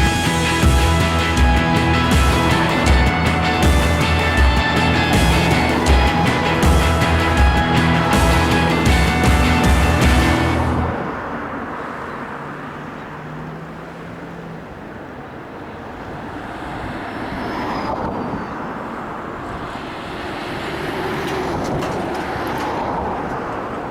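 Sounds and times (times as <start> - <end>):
background music: 0.0 - 11.1
road traffic: 0.0 - 23.9
vehicles passing: 0.0 - 23.9.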